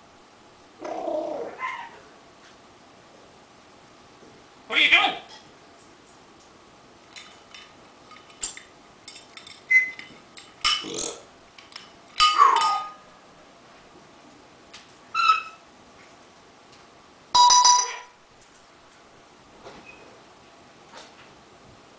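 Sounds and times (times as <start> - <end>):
parrot calling: 0.8 - 2.0, 15.1 - 15.6
parrot whistle: 15.1 - 15.6.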